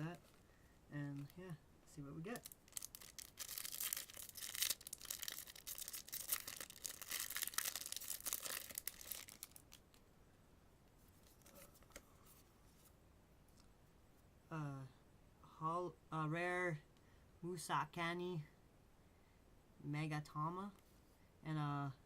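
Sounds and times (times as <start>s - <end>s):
foil wrapper crinkling: 2.4s - 9.9s.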